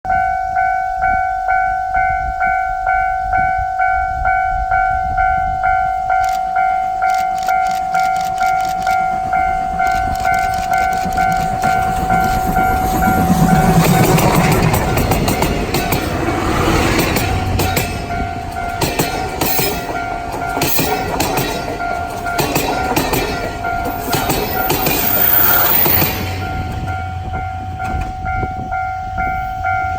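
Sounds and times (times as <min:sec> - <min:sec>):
steam locomotive and coaches: 0:00.1 - 0:29.9
train wheels clacking on rail joints: 0:06.1 - 0:28.8
level crossing bell dinging: 0:17.5 - 0:29.9.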